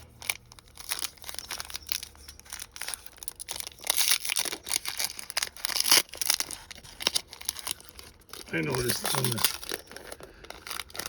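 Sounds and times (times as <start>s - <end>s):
card pack wrapper crinkling: 0.0s - 11.0s.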